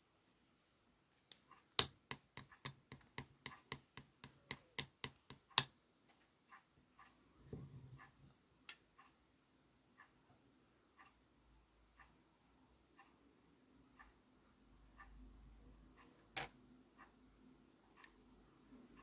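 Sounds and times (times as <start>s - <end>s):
sharp clicks or taps: 1.3s - 5.7s.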